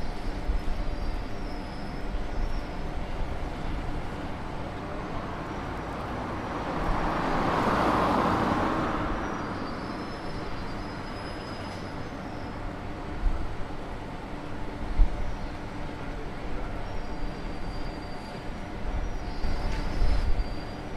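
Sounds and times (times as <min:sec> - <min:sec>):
traffic noise: 0:00.0 - 0:20.9
vehicle passing by: 0:06.5 - 0:09.3.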